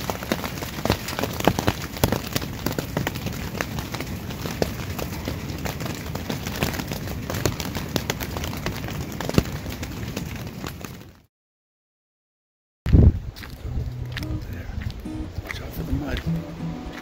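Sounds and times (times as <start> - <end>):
rain on tent fabric: 0.0 - 11.3.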